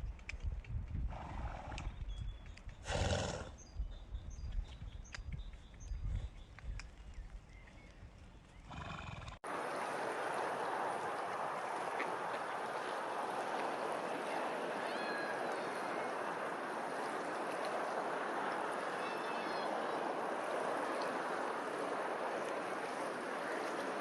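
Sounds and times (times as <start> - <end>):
running water: 9.4 - 24.0.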